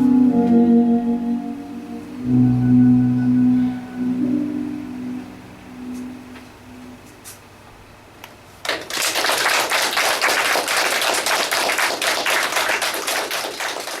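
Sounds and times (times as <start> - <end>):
audience applause: 8.6 - 14.0.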